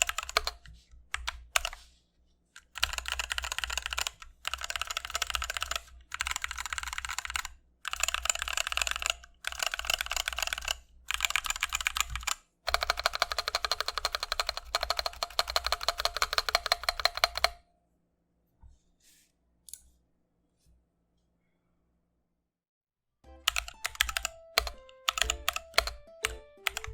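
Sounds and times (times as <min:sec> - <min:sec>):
mechanical keyboard typing: 0:00.0 - 0:01.8, 0:02.6 - 0:17.6, 0:23.4 - 0:26.9.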